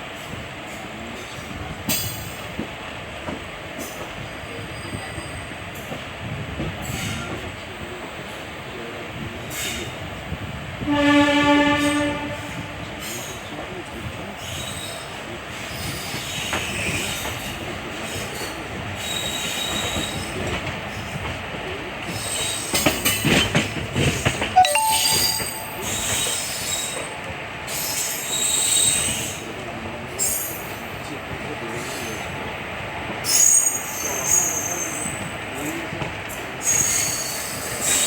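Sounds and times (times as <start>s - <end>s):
train coaches running on track: 0.0s - 38.0s
locomotive horn blast: 10.9s - 12.9s.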